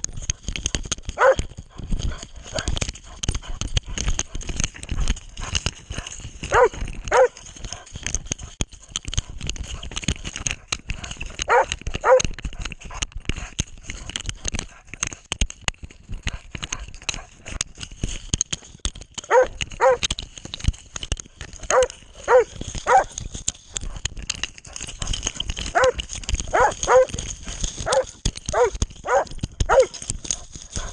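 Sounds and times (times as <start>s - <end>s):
camera rustling and knocking: 0.0s - 30.9s
dog barking: 1.2s - 1.4s, 6.5s - 7.4s, 11.5s - 12.2s, 19.3s - 20.0s, 21.7s - 23.1s, 25.7s - 27.1s, 27.8s - 29.9s.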